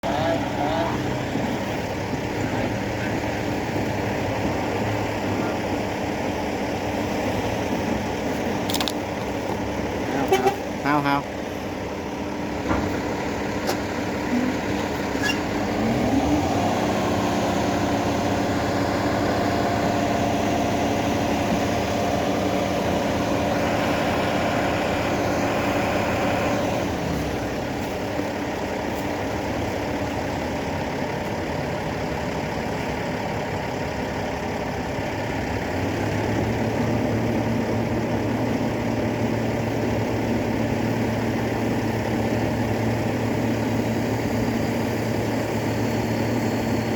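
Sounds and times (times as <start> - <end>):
heavy diesel engines running: 0.0 - 46.9.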